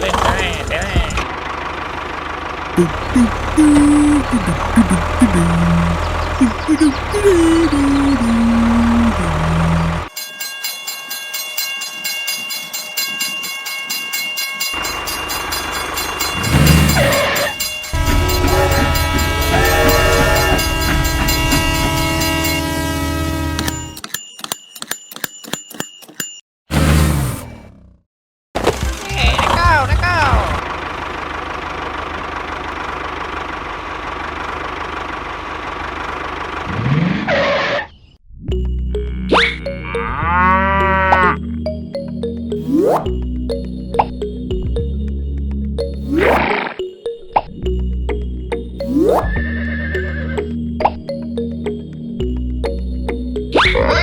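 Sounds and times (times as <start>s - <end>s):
engine idling with chugging pulse: 0.0s - 10.1s, 14.7s - 24.0s, 28.9s - 37.4s
low train hum: 0.0s - 10.1s, 12.4s - 24.0s.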